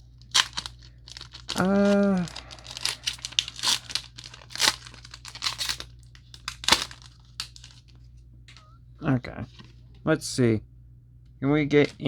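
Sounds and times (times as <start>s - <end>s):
foil wrapper ripping and crinkling: 0.0s - 8.0s.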